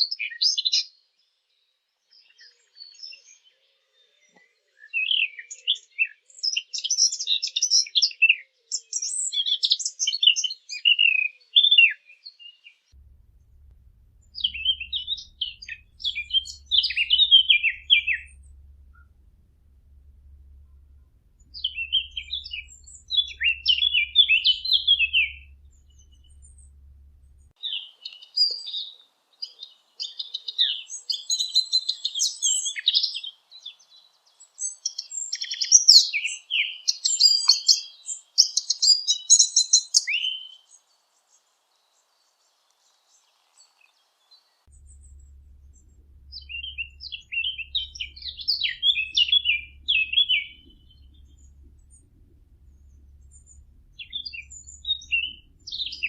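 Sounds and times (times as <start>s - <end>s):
bird warbling song: 2.1s - 40.9s, 42.4s - 56.0s
faint low hum: 12.9s - 27.8s, 44.5s - 56.0s.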